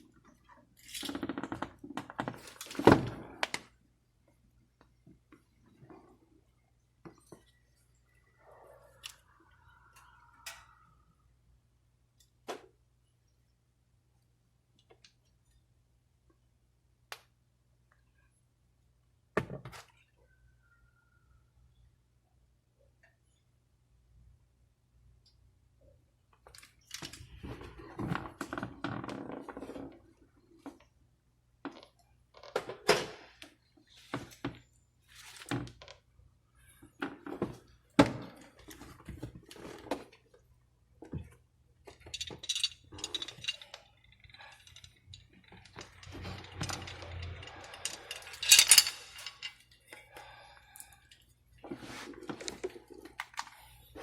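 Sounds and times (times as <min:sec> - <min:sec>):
metal clinks: 0:42.1 - 0:49.9.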